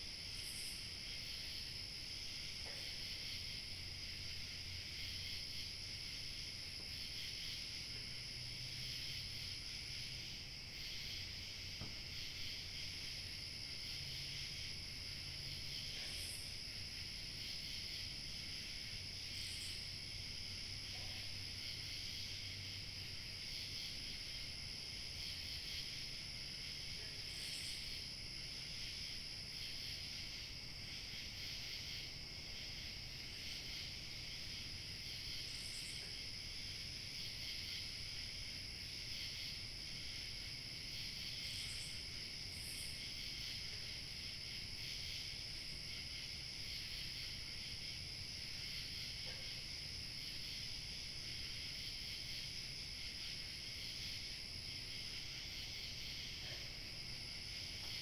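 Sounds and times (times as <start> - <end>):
crickets chirping: 0.0 - 58.0.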